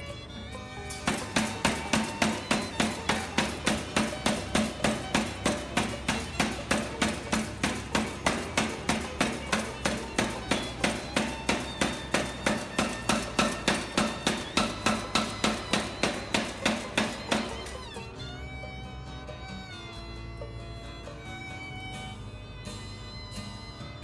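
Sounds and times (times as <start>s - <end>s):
power hammer striking: 0.9s - 18.1s.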